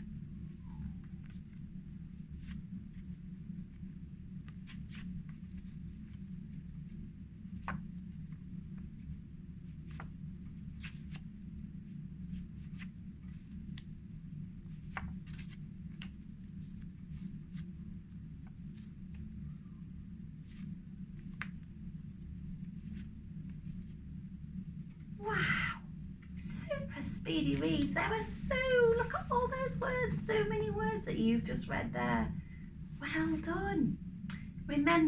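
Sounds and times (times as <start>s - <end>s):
steady low hum: 0.0s - 35.0s
paper cards rustling: 26.7s - 32.2s.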